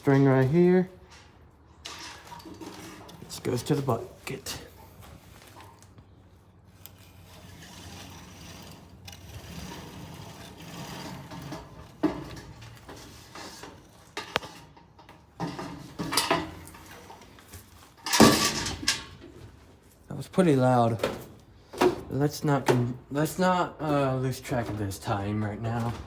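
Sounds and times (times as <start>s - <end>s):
string pulled rubbing and scraping: 6.8s - 14.8s.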